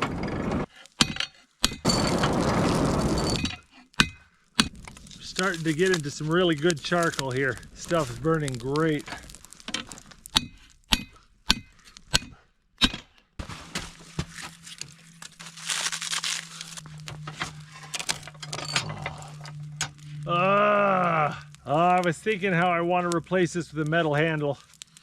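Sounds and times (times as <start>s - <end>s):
charcoal clinking and snapping: 0.8s - 22.2s, 23.9s - 25.0s
low hum with rushing hiss: 15.0s - 24.4s.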